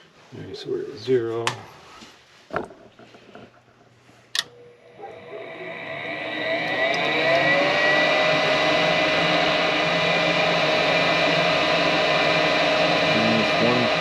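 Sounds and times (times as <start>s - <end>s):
motor spinning up with whine: 4.4s - 14.0s.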